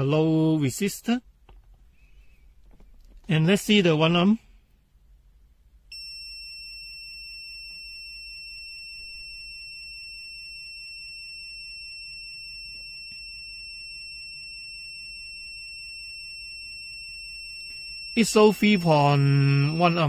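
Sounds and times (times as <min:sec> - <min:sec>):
multimeter high-pitched beep: 0:05.9 - 0:20.0.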